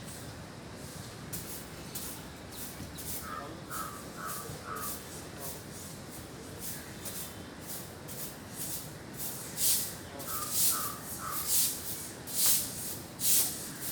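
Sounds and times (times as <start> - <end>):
crows cawing: 3.2 - 5.0, 10.3 - 11.6.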